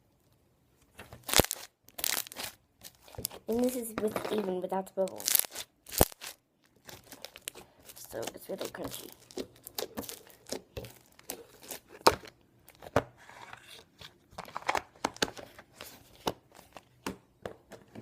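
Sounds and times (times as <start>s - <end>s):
slime crackling and popping: 1.2s - 3.9s, 5.0s - 12.3s.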